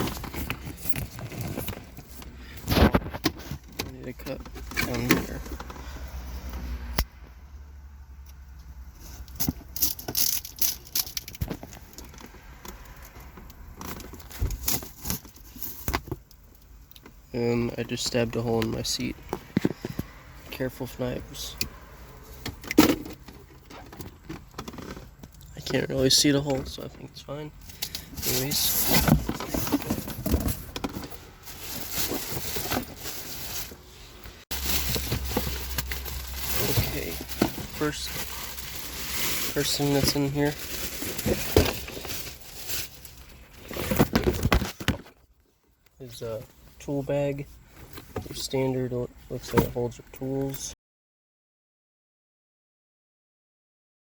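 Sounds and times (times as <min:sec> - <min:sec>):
packaging rustling: 0:00.0 - 0:05.9, 0:28.0 - 0:45.1.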